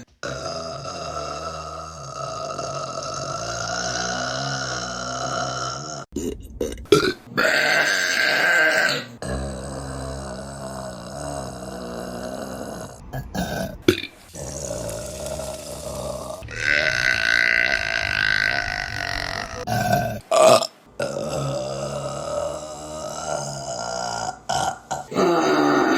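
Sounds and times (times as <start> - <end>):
women burping: 15.7 - 25.9.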